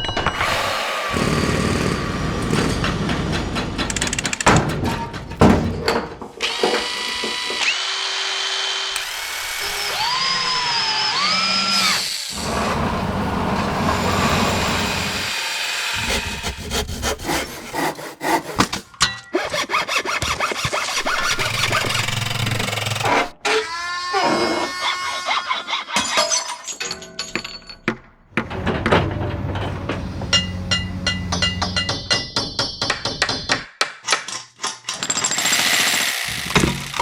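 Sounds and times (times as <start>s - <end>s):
power tools whining: 0.1s - 5.3s, 6.2s - 16.6s, 19.5s - 26.0s, 28.3s - 32.1s, 35.3s - 37.0s
grinding or sawing noise: 0.3s - 4.4s, 6.4s - 18.8s, 19.5s - 25.4s
quick knocks and clatters: 2.4s - 7.6s.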